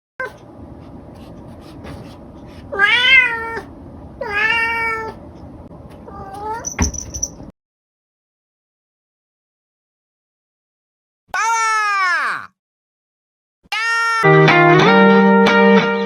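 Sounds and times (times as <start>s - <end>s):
cat meowing: 2.7s - 5.2s, 6.1s - 6.7s, 13.7s - 14.3s.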